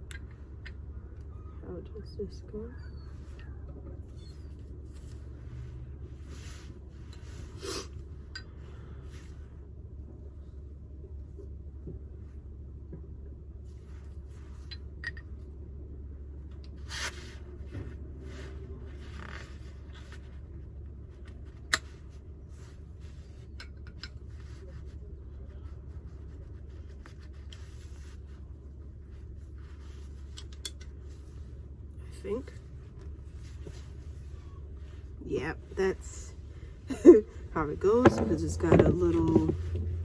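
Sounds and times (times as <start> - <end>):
steady low hum: 0.0 - 40.0
light metallic clicks and scrapes: 23.2 - 25.0, 29.8 - 31.4.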